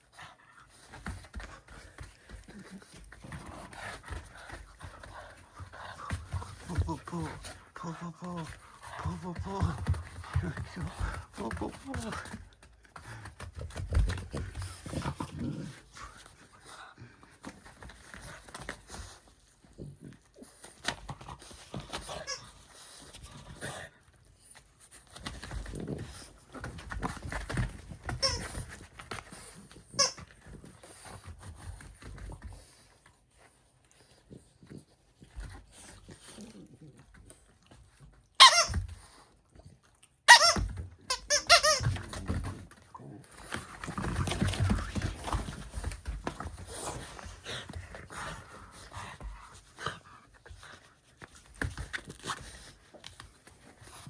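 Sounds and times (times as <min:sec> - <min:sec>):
dog rustling and thumping: 0:00.2 - 0:07.8, 0:08.4 - 0:23.9, 0:24.6 - 0:36.4, 0:41.6 - 0:54.0
squeaky toy squeaking: 0:30.0 - 0:30.2, 0:38.4 - 0:38.8, 0:40.3 - 0:41.8
thuds of dog playing: 0:41.6 - 0:54.0.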